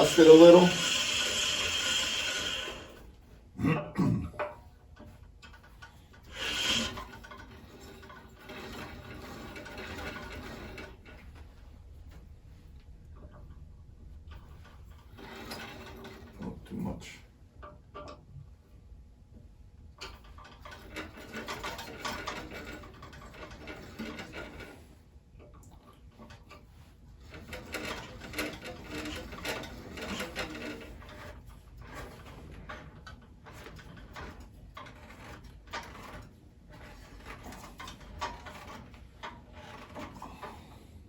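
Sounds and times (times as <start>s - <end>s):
bandsaw wheels whirring rattle: 0.0s - 3.5s, 5.0s - 17.0s, 20.0s - 41.0s
clicks and knocks of handling: 17.6s - 18.5s.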